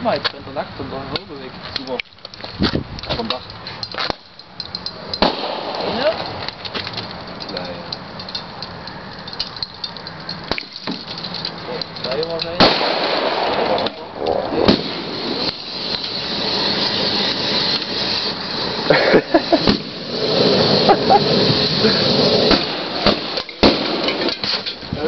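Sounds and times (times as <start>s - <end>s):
spray cans bursting: 2.1s - 24.9s
hissing rush of burning propellant: 5.0s - 8.2s, 10.5s - 25.0s.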